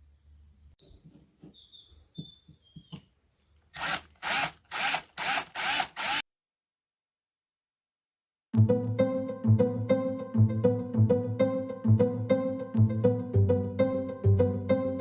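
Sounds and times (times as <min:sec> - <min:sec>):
power drill bursts: 0:03.7 - 0:06.2.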